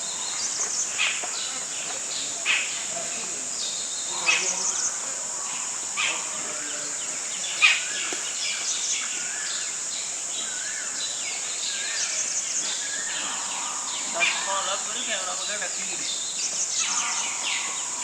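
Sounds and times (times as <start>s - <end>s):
insects droning: 0.0s - 18.0s.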